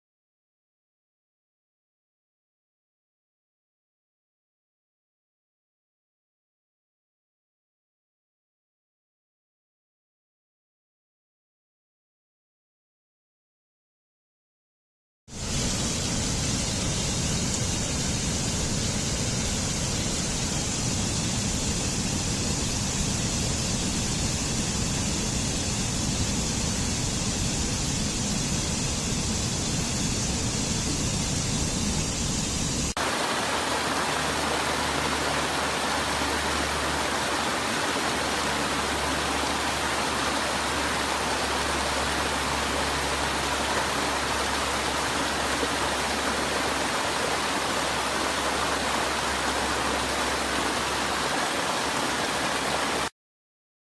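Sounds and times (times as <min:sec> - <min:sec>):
waterfall rushing: 0:26.5 - 0:53.1.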